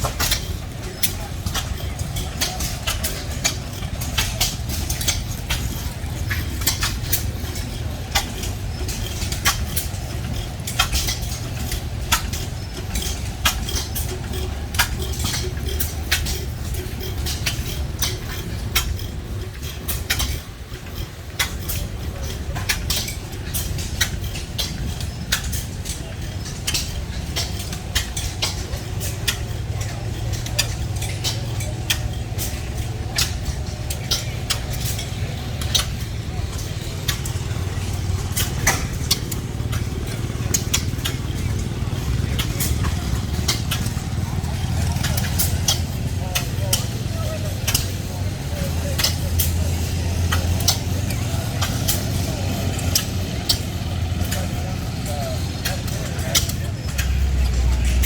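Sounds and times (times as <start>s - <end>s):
metallic clicking: 0.0s - 58.0s
stationary gas engines running: 0.0s - 58.0s.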